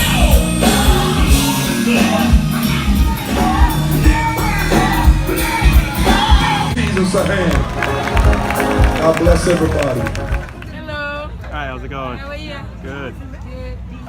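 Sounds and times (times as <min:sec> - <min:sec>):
heavy bass beat: 0:00.0 - 0:10.4.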